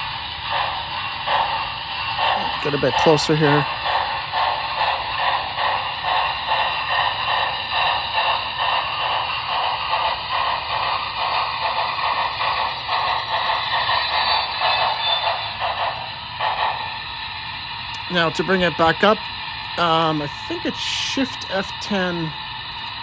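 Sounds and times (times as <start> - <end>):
model steam locomotive chuffs: 0.0 - 23.0
steam hiss: 0.0 - 23.0.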